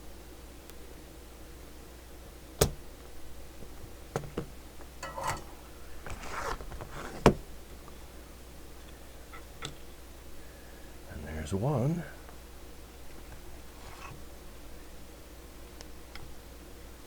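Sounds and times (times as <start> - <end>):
desoldering pump snapping: 2.6 - 3.1, 4.1 - 5.5.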